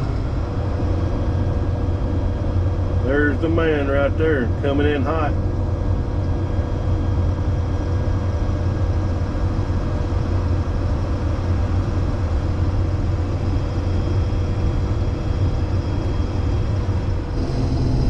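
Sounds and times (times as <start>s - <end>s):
combine engine drone with whine: 0.0s - 18.0s.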